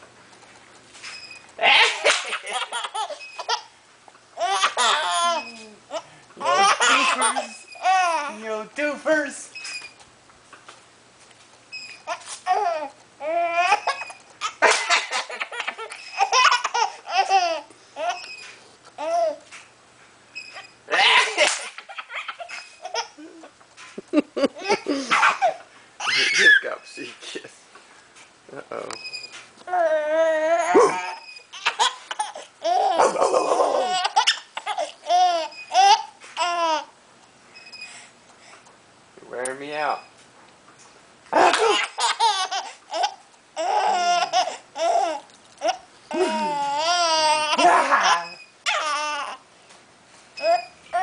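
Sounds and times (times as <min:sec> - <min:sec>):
baby giggling: 0:01.6 - 0:03.7, 0:04.4 - 0:08.3, 0:12.1 - 0:18.3, 0:20.9 - 0:26.6, 0:30.6 - 0:36.9, 0:41.4 - 0:49.4
baby squealing: 0:04.4 - 0:08.4, 0:12.1 - 0:18.4, 0:25.1 - 0:26.7, 0:29.7 - 0:36.9, 0:41.4 - 0:49.4, 0:50.4 - 0:51.0
baby hiccups: 0:30.7 - 0:31.2.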